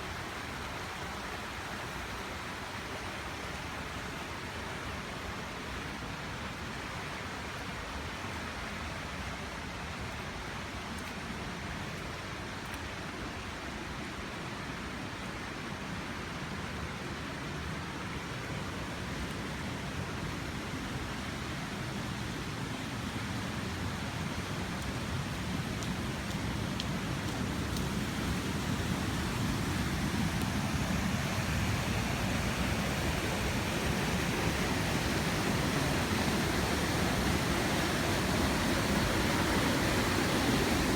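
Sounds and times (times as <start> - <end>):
waterfall rushing: 27.5 - 40.9.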